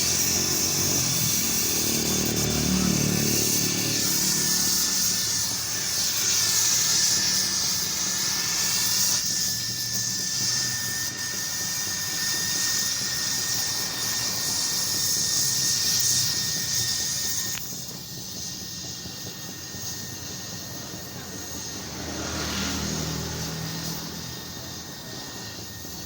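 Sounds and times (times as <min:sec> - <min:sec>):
welding hiss: 0:00.0 - 0:26.0
thin high tone: 0:18.6 - 0:26.0.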